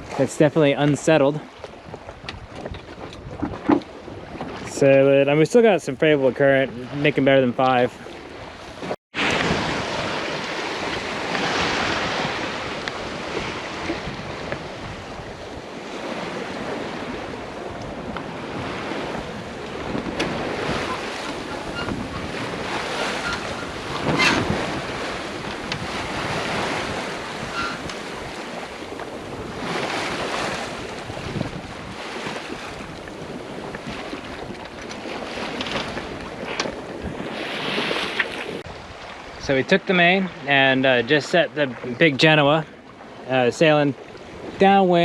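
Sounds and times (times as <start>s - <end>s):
water splashing along a hull: 0.0s - 45.0s
wind buffeting microphone: 1.5s - 4.8s, 7.9s - 39.4s
loud water splash: 9.2s - 14.1s.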